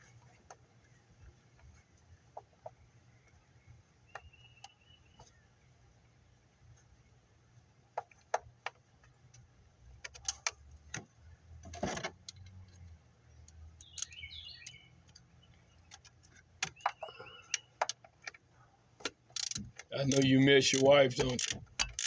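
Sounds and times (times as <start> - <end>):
bird chirp: 3.1 - 5.7, 13.2 - 17.8
hand tools clinking on bolts: 19.4 - 22.0.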